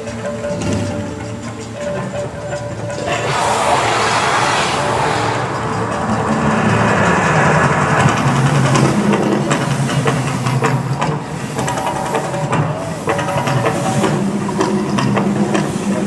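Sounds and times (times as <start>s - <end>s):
low rumble: 3.0s - 9.2s
hiss: 3.0s - 16.0s.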